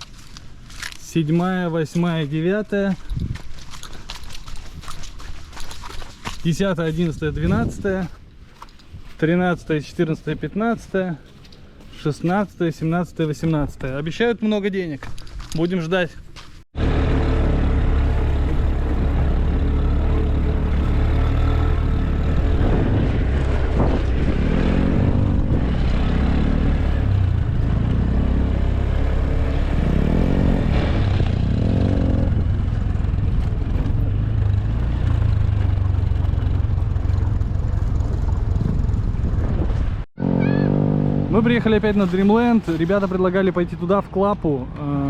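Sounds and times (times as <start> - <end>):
motorbike engine revving: 16.8 - 39.5, 40.2 - 41.6.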